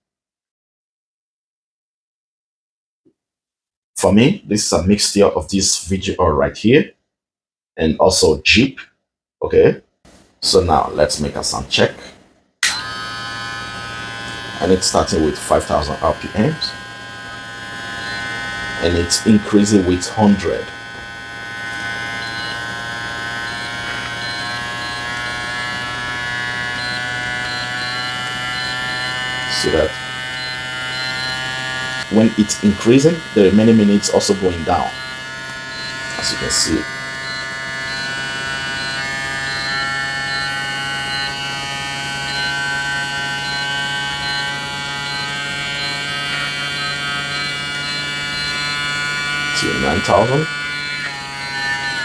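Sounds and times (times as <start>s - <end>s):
hair clipper buzzing: 12.6s - 52.0s.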